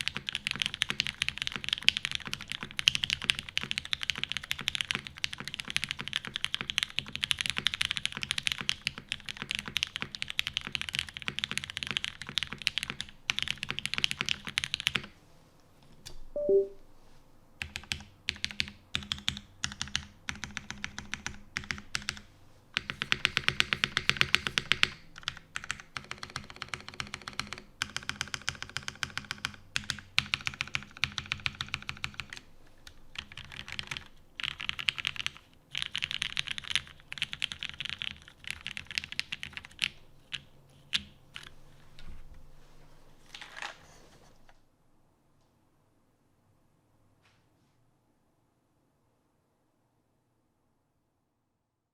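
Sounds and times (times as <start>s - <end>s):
mechanical keyboard typing: 0.0s - 15.1s, 17.6s - 41.5s.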